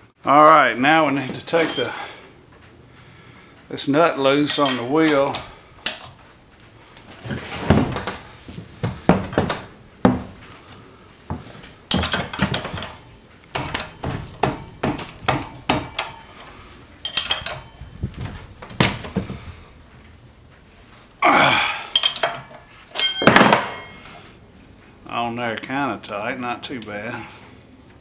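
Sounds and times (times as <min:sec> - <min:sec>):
metal hand tools clinking: 0:01.6 - 0:02.2, 0:04.3 - 0:06.1, 0:11.9 - 0:17.9, 0:21.9 - 0:24.2.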